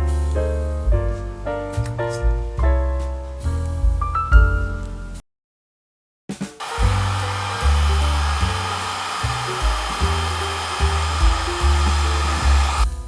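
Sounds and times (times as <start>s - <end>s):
background music with bass: 0.0s - 5.2s, 6.7s - 13.0s
small electric motor whirring: 6.6s - 12.9s.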